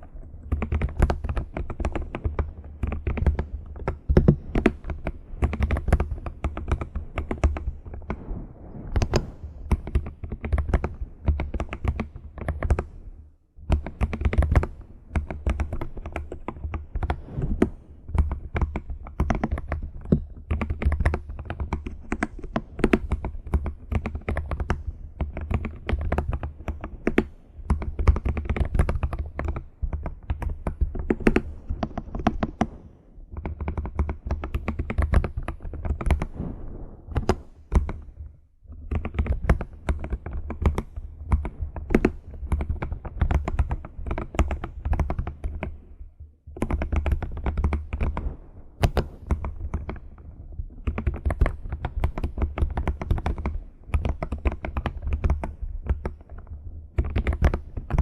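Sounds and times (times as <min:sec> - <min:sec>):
computer keyboard typing: 0:00.5 - 0:07.6, 0:13.7 - 0:17.2, 0:18.2 - 0:32.7, 0:38.9 - 0:45.7, 0:46.6 - 0:48.2, 0:50.8 - 0:56.2, 0:57.0 - 0:58.0.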